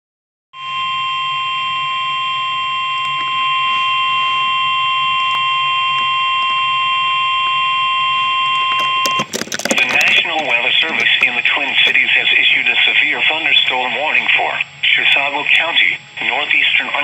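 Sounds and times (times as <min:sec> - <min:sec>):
loud steady alarm tone: 0:00.6 - 0:09.1
clicks: 0:08.8 - 0:12.0.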